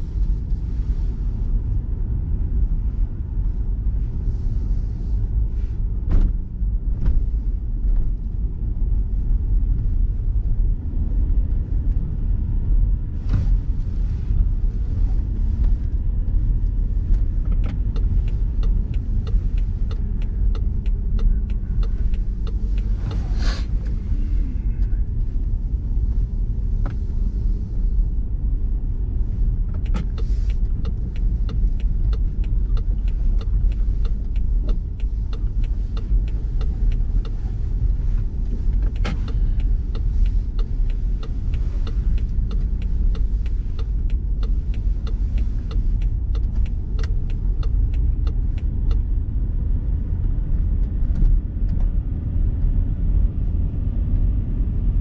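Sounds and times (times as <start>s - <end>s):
car driving through snow: 12.8s - 28.3s
sharp ticks and clicks: 29.8s - 37.4s, 38.8s - 49.0s.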